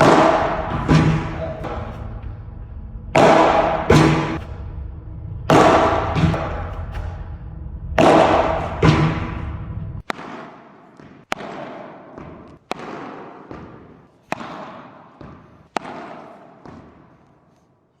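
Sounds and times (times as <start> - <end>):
padel ball hits with reverb: 0.0 - 2.3, 3.1 - 4.5, 8.0 - 17.1.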